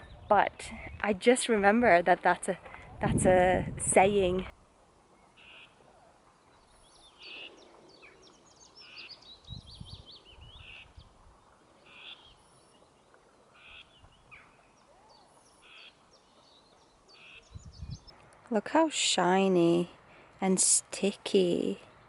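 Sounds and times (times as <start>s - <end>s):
songbirds chirping and trilling: 5.0s - 18.5s.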